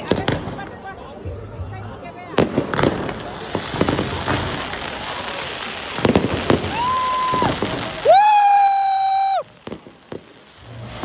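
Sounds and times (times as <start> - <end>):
fireworks popping: 0.0 - 11.0.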